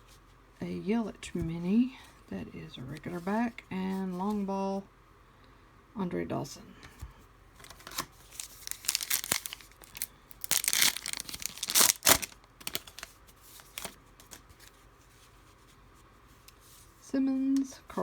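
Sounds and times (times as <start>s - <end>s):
wrapper tearing and crinkling: 7.6s - 14.4s.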